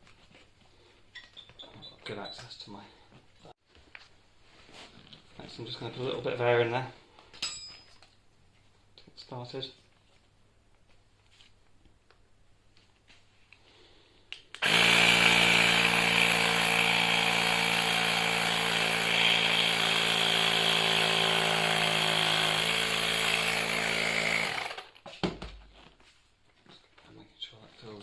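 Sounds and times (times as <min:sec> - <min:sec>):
electric tyre inflator running: 0:14.6 - 0:24.9.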